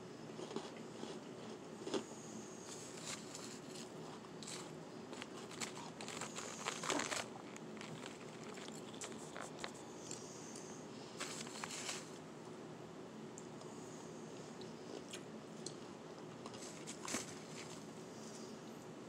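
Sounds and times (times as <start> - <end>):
shaved ice crunching: 2.9 - 9.7.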